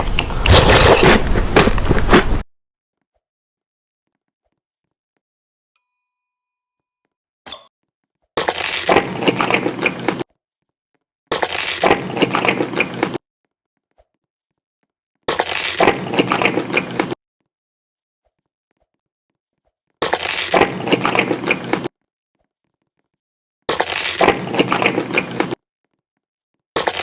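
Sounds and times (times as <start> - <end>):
crunchy food chewing: 0.0 - 2.4, 8.4 - 10.2, 11.3 - 13.2, 15.3 - 17.2, 20.0 - 21.9, 23.7 - 25.6, 26.8 - 27.0.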